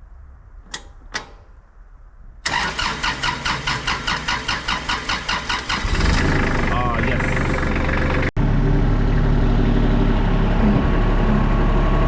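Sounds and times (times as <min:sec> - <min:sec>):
engine starter cranking: 0:02.4 - 0:08.3.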